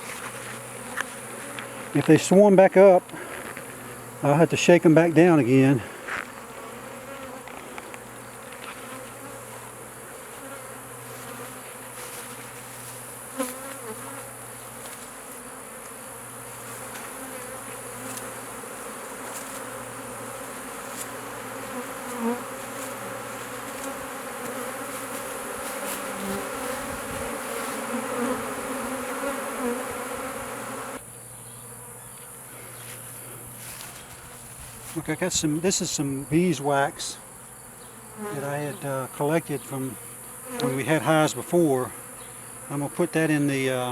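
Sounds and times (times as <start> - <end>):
bees buzzing: 0.0 - 43.9.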